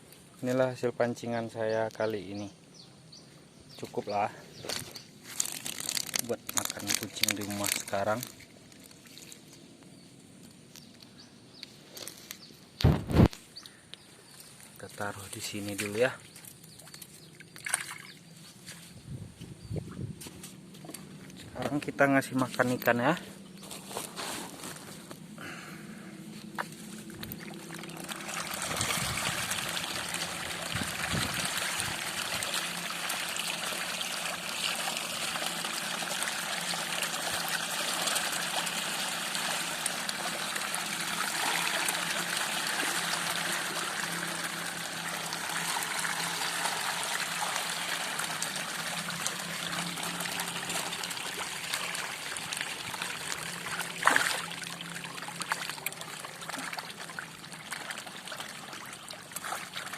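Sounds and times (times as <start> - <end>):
water trickling and splashing: 3.9 - 11.0, 12.9 - 19.0, 26.3 - 59.9.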